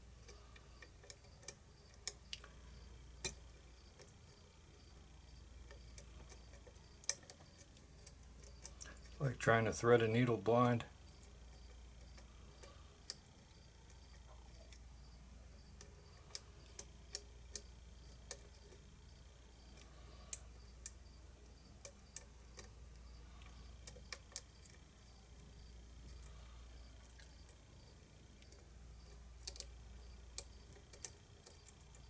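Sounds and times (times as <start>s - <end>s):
low steady hum: 0.0s - 32.0s.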